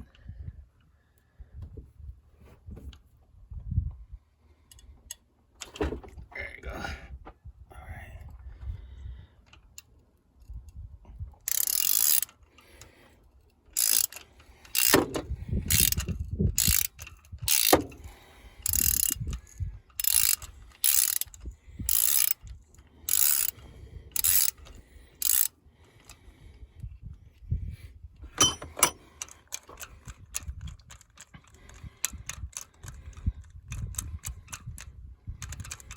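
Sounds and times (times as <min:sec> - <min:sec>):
ratchet clicking: 0:11.4 - 0:13.0, 0:13.7 - 0:26.2, 0:28.4 - 0:35.9.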